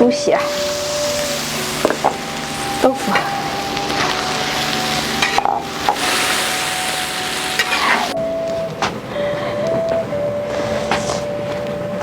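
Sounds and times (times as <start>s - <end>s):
food sizzling in a wok: 0.4s - 8.2s.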